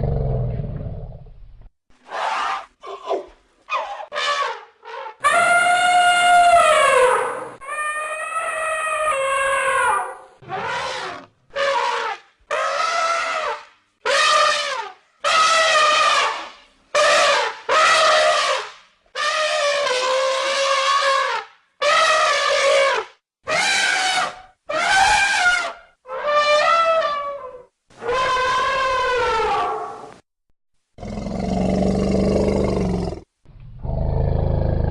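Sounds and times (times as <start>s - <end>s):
elephant trumpeting: 3.7s - 30.0s.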